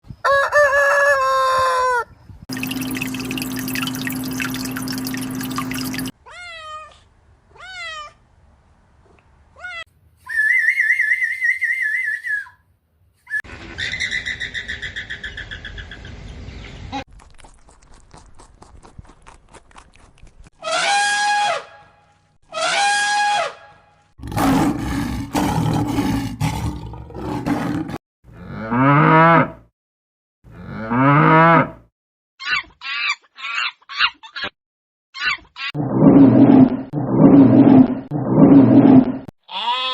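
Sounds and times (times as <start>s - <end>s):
warbling call: 2.5s - 6.1s
whistled chirps: 10.2s - 12.7s.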